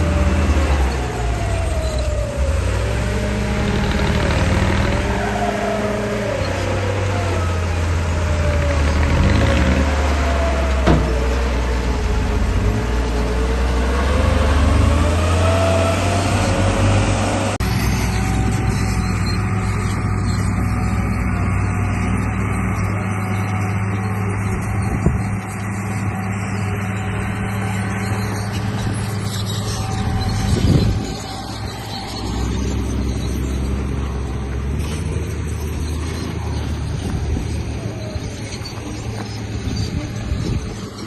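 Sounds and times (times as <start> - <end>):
toy bulldozer motor whining: 17.6 - 41.0.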